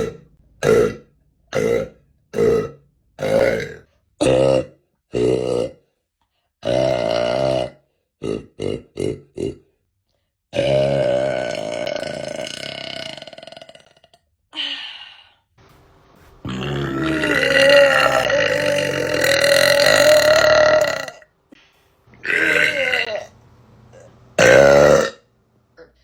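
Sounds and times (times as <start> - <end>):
woman belching: 0.0 - 5.8, 6.6 - 9.6, 10.6 - 14.2, 16.4 - 21.2, 22.2 - 23.3, 24.0 - 25.2.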